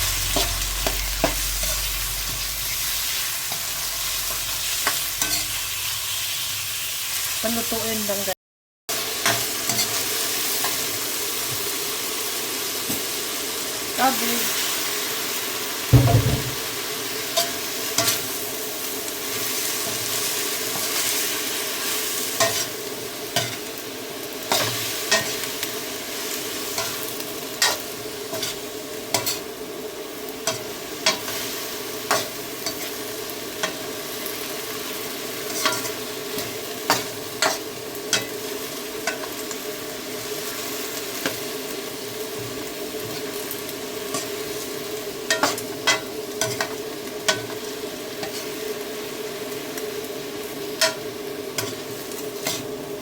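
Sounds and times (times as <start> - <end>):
chicken and cabbage sizzling in a pan: 0.0 - 53.0
spatula clacking and scraping a pan: 9.2 - 10.8, 17.4 - 18.3, 22.4 - 23.7, 24.5 - 25.5, 27.6 - 29.4, 30.4 - 33.0, 35.4 - 38.4, 45.3 - 47.6, 48.2 - 48.6, 50.8 - 52.7
dull thump: 15.9 - 16.6.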